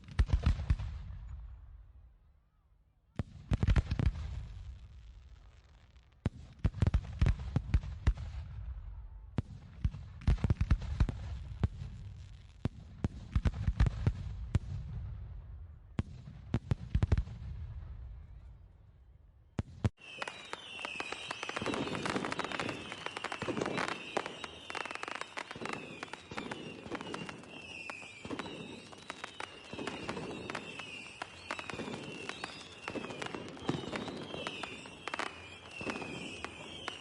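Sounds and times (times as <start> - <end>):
fireworks banging: 19.9 - 37.0
hiss with high whistling tone: 20.0 - 37.0.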